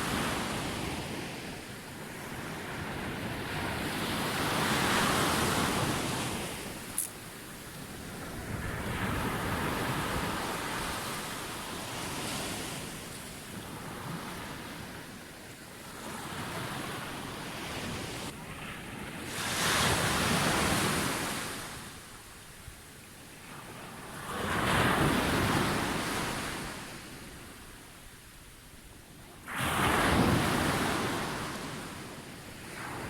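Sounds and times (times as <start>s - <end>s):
ocean waves breaking on beach: 0.0s - 22.0s, 29.3s - 33.0s.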